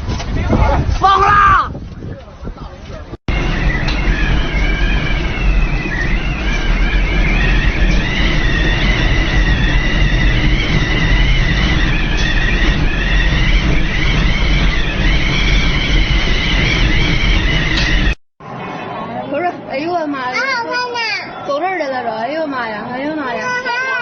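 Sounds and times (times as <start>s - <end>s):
wind buffeting microphone: 0.0s - 18.2s
high-pitched wind howl: 0.0s - 24.0s.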